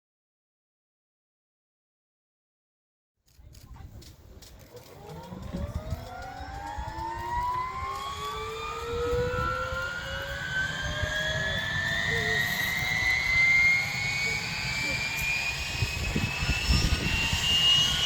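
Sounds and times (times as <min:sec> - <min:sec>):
turbine engine whine: 0:04.4 - 0:18.0.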